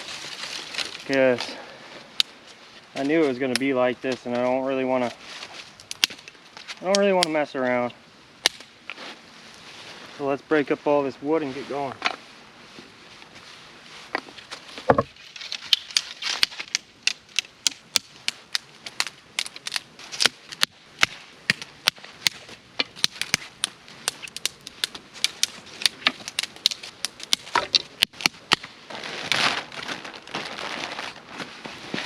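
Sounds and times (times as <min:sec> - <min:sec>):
twigs snapping: 0:00.0 - 0:01.5, 0:02.1 - 0:02.4, 0:05.5 - 0:07.4, 0:08.4 - 0:09.0, 0:14.1 - 0:31.2
rustling of sticks: 0:00.0 - 0:32.0.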